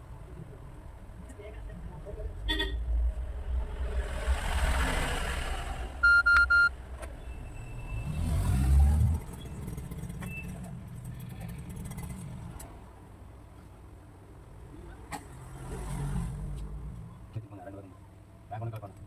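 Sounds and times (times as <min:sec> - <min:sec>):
road traffic rumbling: 0:00.0 - 0:18.4
vehicle passing: 0:01.6 - 0:12.8
phone high-pitched beeps: 0:06.0 - 0:06.7.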